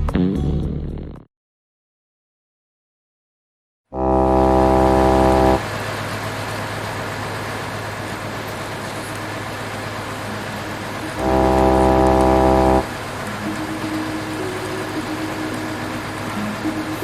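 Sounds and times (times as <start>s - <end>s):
truck horn blasts: 3.9s - 5.7s, 11.1s - 13.0s.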